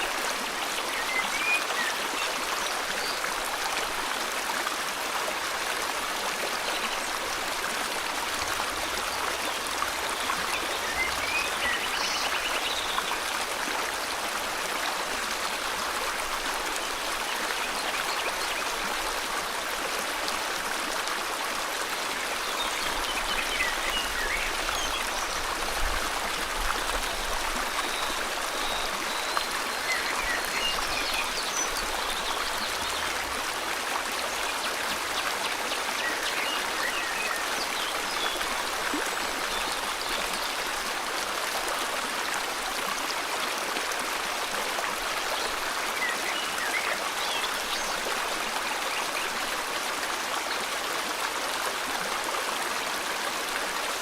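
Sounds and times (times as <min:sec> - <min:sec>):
river water flowing: 0:00.0 - 0:54.0.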